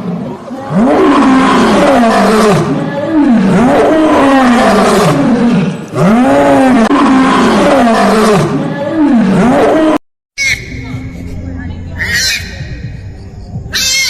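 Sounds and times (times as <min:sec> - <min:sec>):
big cat roaring: 0:00.1 - 0:10.0.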